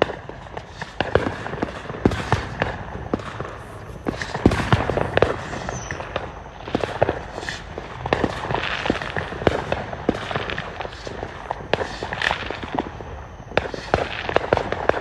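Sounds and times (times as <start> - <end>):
fireworks bangs and pops: 0.0 - 15.0
fireworks crackling: 0.0 - 15.0.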